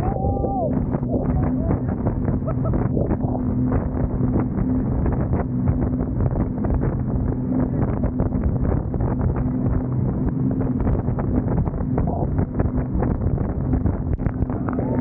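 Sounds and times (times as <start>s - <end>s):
boat engine droning: 0.0s - 15.0s
wind buffeting microphone: 0.0s - 15.0s.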